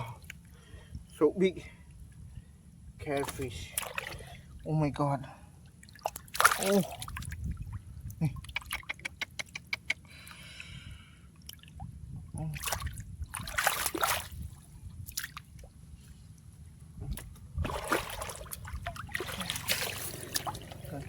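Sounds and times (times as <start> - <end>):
splashing in muddy water: 3.1 - 4.5, 5.8 - 9.2, 12.4 - 15.8, 17.1 - 21.0.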